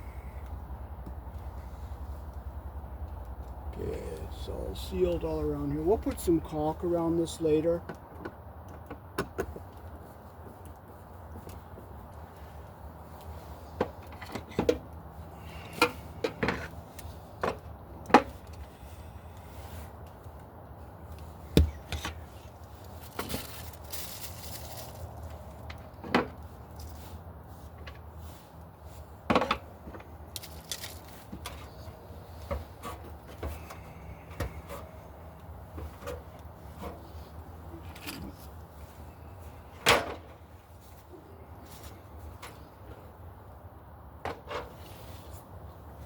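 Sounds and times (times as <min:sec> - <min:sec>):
tools knocking and tapping: 0:07.9 - 0:09.7.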